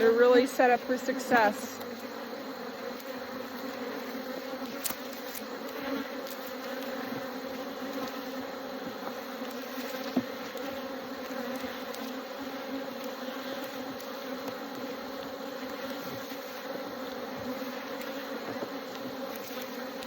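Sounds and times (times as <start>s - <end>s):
bees buzzing: 0.0s - 20.0s.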